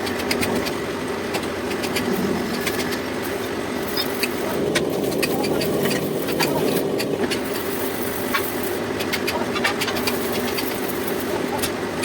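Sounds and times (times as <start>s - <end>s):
sharp metallic clicks: 0.0s - 7.6s.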